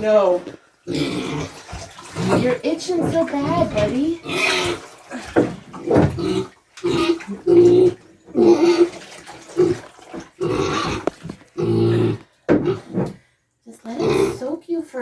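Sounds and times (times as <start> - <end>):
pig squealing: 0.9 - 2.6, 3.4 - 4.9, 6.2 - 12.9.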